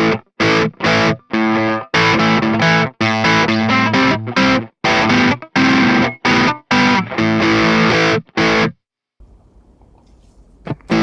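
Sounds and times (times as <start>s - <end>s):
faint amp hum: 9.2s - 11.0s.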